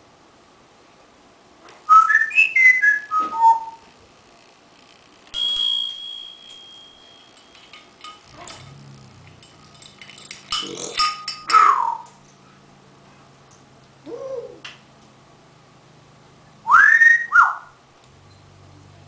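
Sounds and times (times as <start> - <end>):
parrot whistling notes: 1.9 - 3.8, 16.7 - 17.7.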